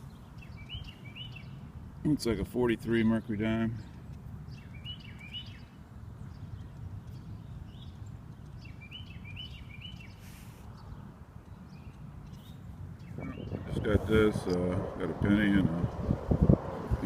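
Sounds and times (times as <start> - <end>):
small bird chirping: 0.0 - 2.1, 3.0 - 14.7
low outdoor rumble: 10.7 - 17.0.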